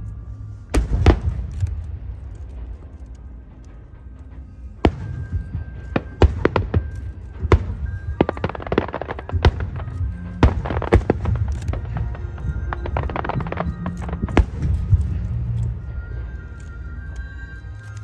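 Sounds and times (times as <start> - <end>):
low rumble: 0.0 - 17.6
background music: 0.0 - 18.0
fireworks bangs: 0.8 - 1.8, 4.8 - 15.2.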